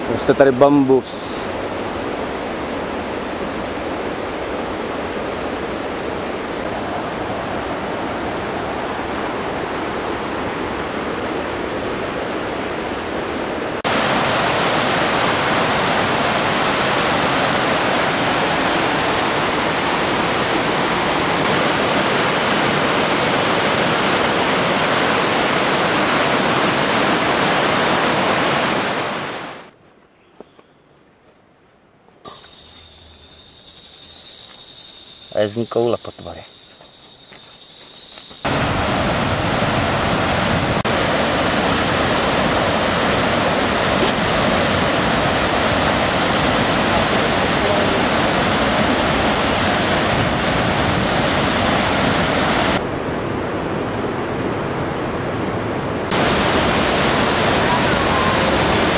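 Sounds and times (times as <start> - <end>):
thin high whine: 0.0 - 29.7, 32.3 - 52.8, 56.1 - 58.9
waterfall roaring: 4.7 - 8.6, 13.4 - 29.7, 38.4 - 58.9.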